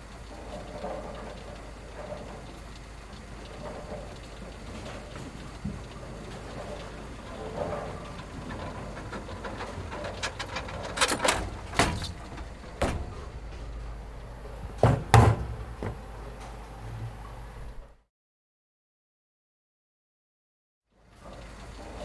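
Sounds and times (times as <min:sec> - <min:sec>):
steady low hum: 0:00.2 - 0:18.0
knocks and bangs: 0:08.5 - 0:16.2.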